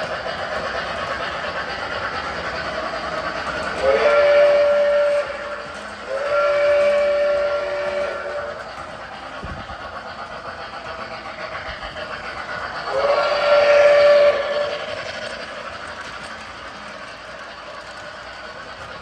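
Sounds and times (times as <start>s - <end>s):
model train running: 0.0s - 19.0s
train whistle blast: 3.5s - 9.6s, 12.8s - 15.3s.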